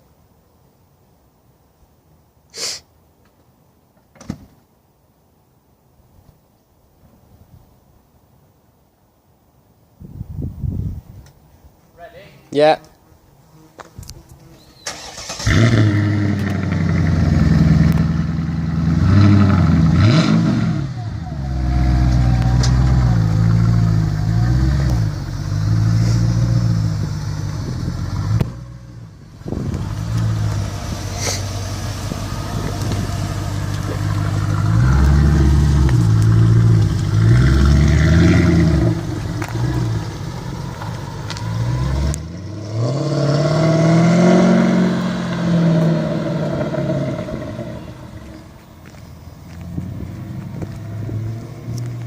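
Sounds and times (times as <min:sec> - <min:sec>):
car engine idling and revving: 0:14.9 - 0:52.0.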